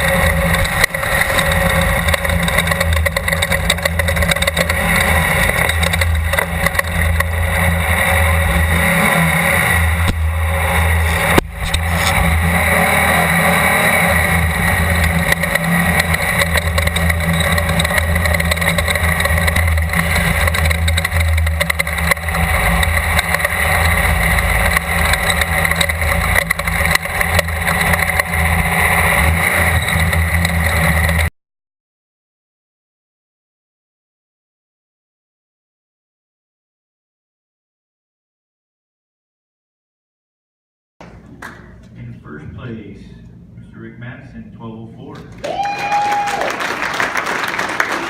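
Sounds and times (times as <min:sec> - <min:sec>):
race car engine running hard: 0:00.0 - 0:31.3.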